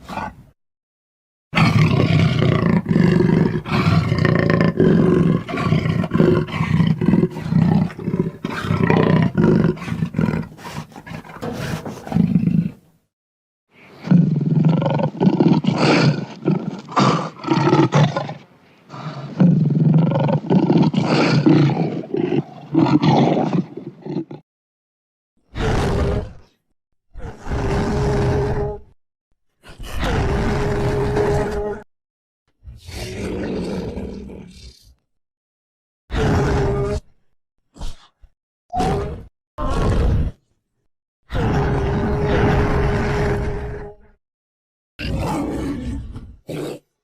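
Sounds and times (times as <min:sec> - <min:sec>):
deep dinosaur roar: 0:01.6 - 0:12.8, 0:14.0 - 0:24.4, 0:27.2 - 0:29.0, 0:29.7 - 0:31.9, 0:32.8 - 0:35.0, 0:36.1 - 0:37.1, 0:38.7 - 0:40.4, 0:41.3 - 0:44.2, 0:45.0 - 0:46.8.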